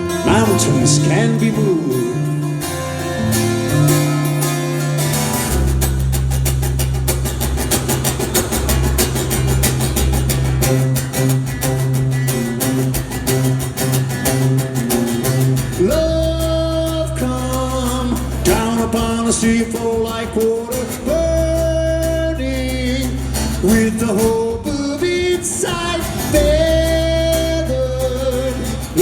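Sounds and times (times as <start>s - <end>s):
bass guitar: 0.0s - 29.0s
electric guitar: 0.0s - 29.0s
drums playing a steady beat: 3.3s - 22.2s, 23.3s - 29.0s.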